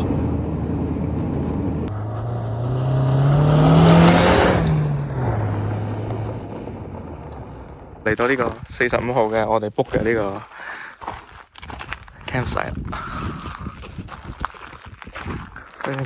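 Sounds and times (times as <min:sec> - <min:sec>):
car engine speeding up: 0:00.0 - 0:08.0.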